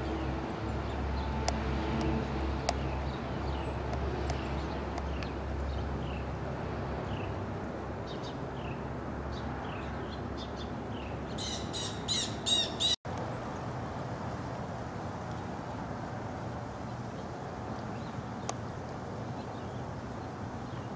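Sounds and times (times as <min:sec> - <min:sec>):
birds chirping: 0:08.1 - 0:13.0
harsh bird calls: 0:09.8 - 0:13.0.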